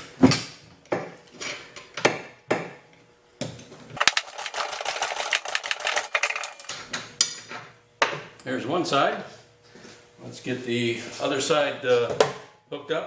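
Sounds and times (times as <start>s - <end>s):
ratchet clicking rapidly: 4.0s - 6.7s.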